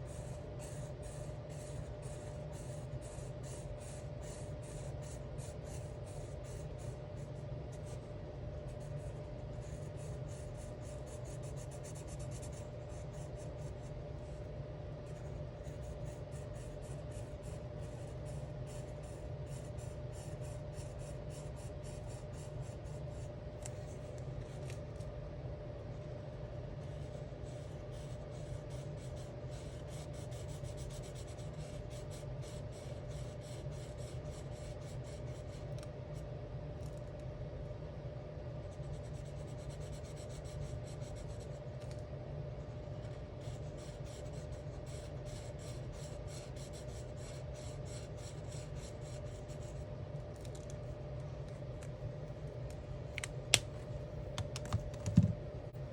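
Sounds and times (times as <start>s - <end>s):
steady low hum: 0.0s - 55.9s
markers scratching on paper: 0.1s - 8.1s, 8.7s - 14.4s, 15.1s - 24.8s, 26.8s - 35.8s, 38.7s - 41.6s, 42.9s - 49.8s.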